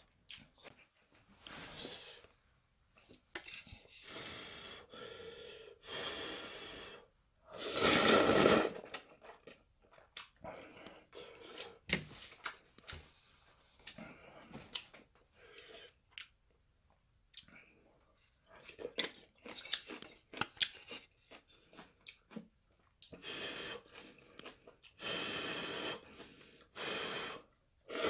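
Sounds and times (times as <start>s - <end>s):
person slurping noodles: 7.6s - 9.4s, 27.2s - 28.0s
wet chewing: 18.6s - 23.2s.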